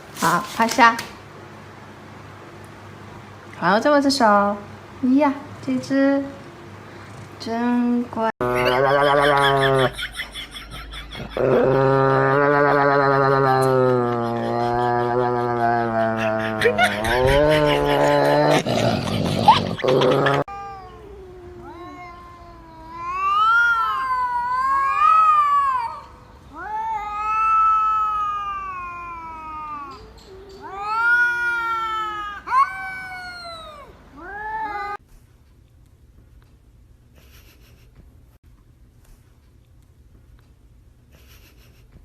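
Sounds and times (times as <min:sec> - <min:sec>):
cat yowling: 0:20.0 - 0:35.0.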